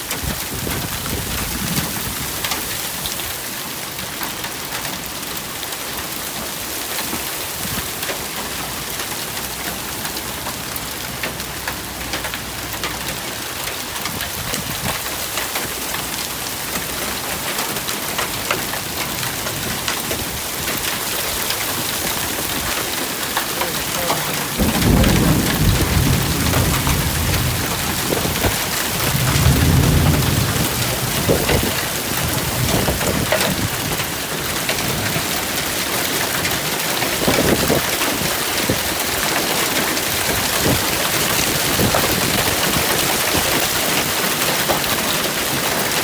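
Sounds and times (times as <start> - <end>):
hail striking hard surfaces: 0.0 - 46.0
low rumbles: 22.1 - 34.1.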